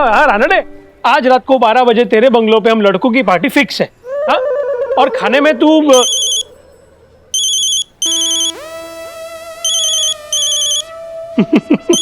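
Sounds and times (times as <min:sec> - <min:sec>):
electronic phone ringtone trilling: 0:05.9 - 0:06.7, 0:07.3 - 0:10.9, 0:11.5 - 0:12.0.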